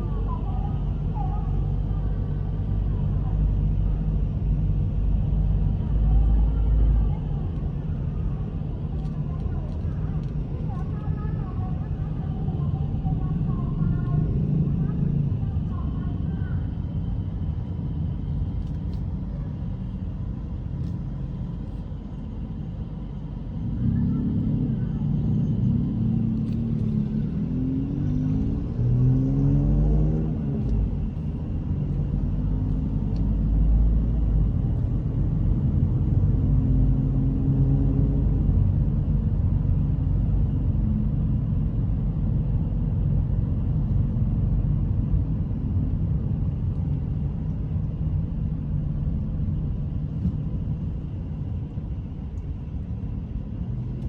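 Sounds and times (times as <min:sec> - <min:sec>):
street traffic rumble: 0:00.0 - 0:54.0
vehicle engine passing: 0:23.7 - 0:30.9.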